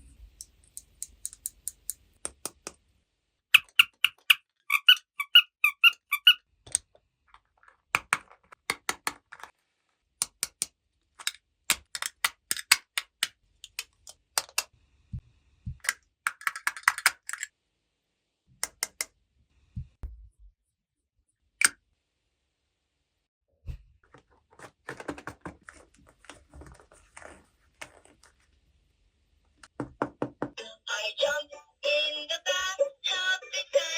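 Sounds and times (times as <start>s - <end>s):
plastic toy pieces clicking: 10.2s - 14.7s, 15.8s - 17.5s
soft low thuds: 19.8s - 20.5s.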